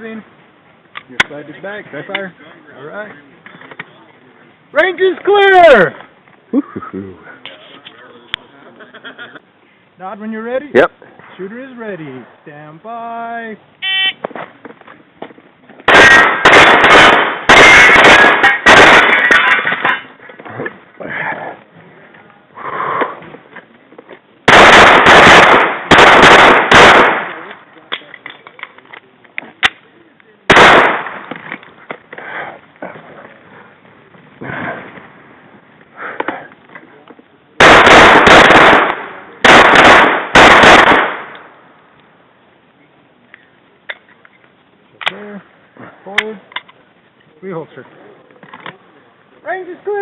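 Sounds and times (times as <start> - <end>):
rapid pistol shots: 15.9 - 19.3, 24.5 - 27.5, 30.5 - 31.3, 37.6 - 41.3.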